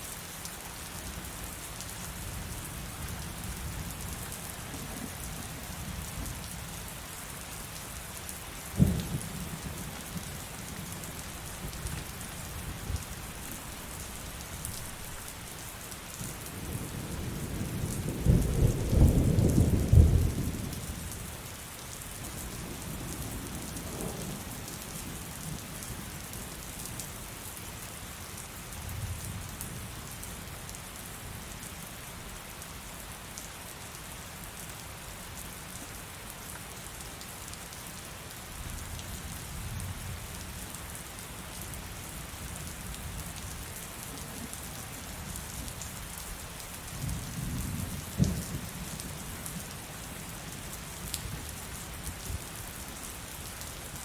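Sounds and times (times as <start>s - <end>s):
heavy rain: 0.0s - 54.0s
thunder clap and rumble: 16.6s - 20.8s, 47.0s - 48.8s.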